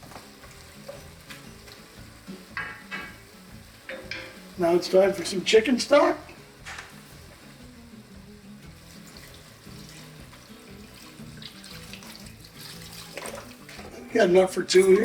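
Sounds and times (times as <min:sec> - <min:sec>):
quiet background music: 0:00.0 - 0:15.0
liquid pouring into a pot: 0:08.8 - 0:14.1.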